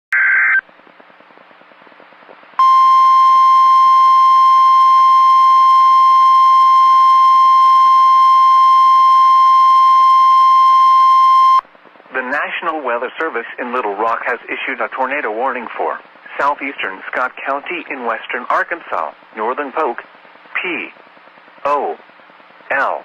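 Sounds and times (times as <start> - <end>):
loud steady alarm beep: 2.6 - 11.6.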